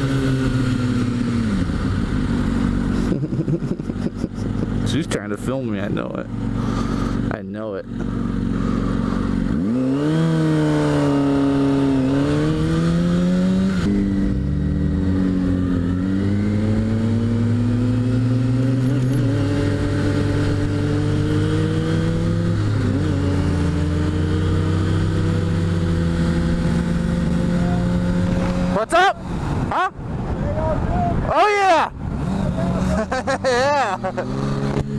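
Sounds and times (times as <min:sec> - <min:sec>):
motorcycle engine accelerating: 0:00.0 - 0:29.8, 0:31.9 - 0:34.9.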